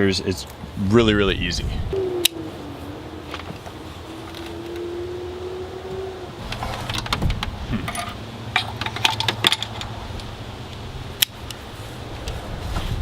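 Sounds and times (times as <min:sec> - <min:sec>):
steady low hum: 0:00.5 - 0:08.9.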